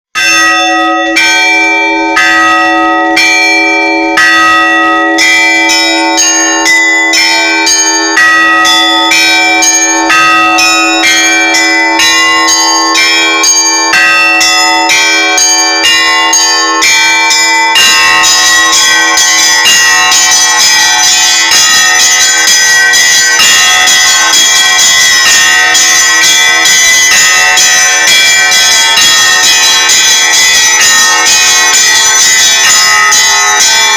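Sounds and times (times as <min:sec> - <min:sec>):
church bells ringing: 0:00.2 - 0:33.9.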